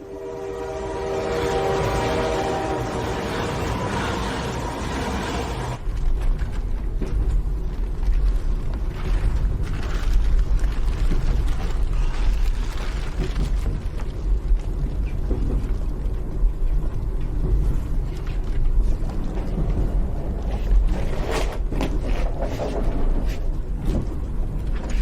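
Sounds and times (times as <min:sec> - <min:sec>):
train horn chord: 0:00.0 - 0:05.8
train rumbling on rails: 0:00.0 - 0:25.0.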